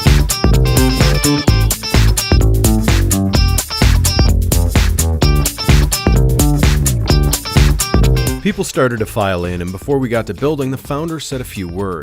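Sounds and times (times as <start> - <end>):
funky guitar and bass music: 0.0 - 12.0.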